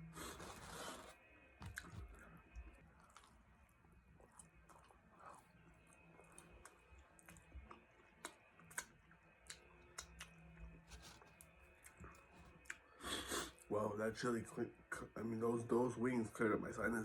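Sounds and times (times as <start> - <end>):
person chewing: 0.1 - 2.1, 3.0 - 3.4, 4.2 - 13.6.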